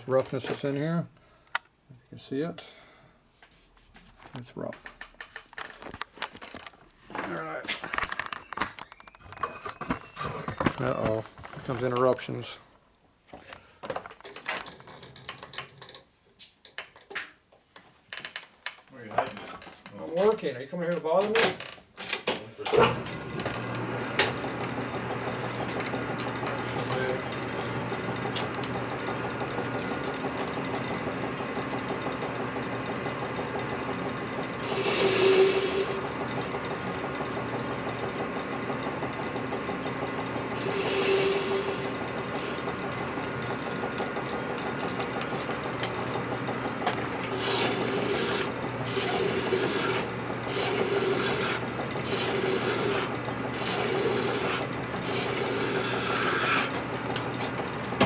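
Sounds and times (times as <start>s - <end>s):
metal lathe running: 22.8s - 58.0s
rasping scrape of cutting steel: 34.6s - 36.0s, 40.6s - 41.9s, 47.3s - 56.8s.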